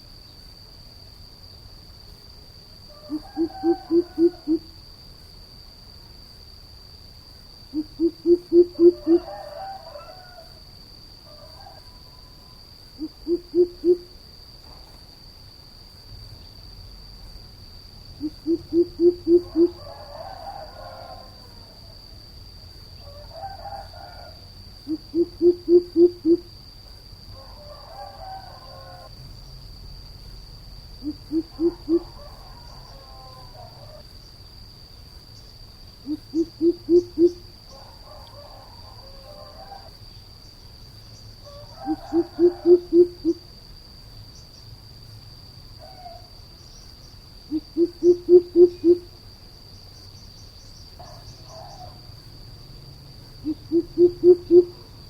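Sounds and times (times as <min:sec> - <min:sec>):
bird deep hollow hoots: 0:03.0 - 0:04.7, 0:07.7 - 0:09.8, 0:13.0 - 0:14.2, 0:18.2 - 0:20.4, 0:23.7 - 0:26.5, 0:31.0 - 0:34.0, 0:36.0 - 0:37.5, 0:41.5 - 0:43.4, 0:47.5 - 0:49.2, 0:53.4 - 0:54.8.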